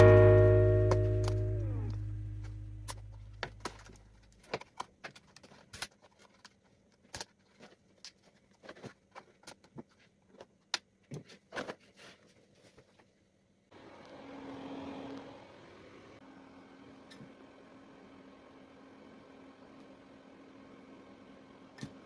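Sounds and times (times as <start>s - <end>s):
background music: 0.0s - 3.0s.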